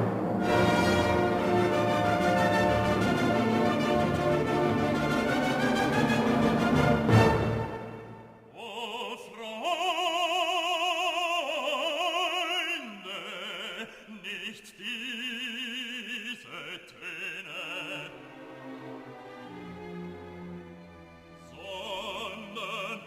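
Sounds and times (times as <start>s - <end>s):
operatic solo voice singing: 8.5s - 18.5s, 21.4s - 23.0s.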